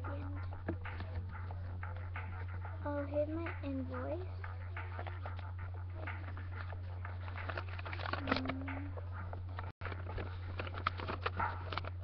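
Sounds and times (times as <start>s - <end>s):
low electrical hum: 0.0s - 12.0s
paper rustling: 6.0s - 8.7s, 9.5s - 12.0s.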